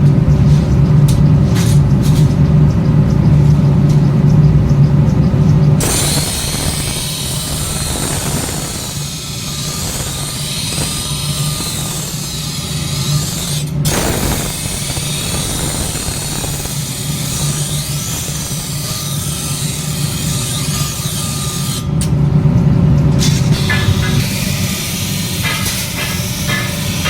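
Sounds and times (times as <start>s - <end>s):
power tool running: 5.8s - 21.9s.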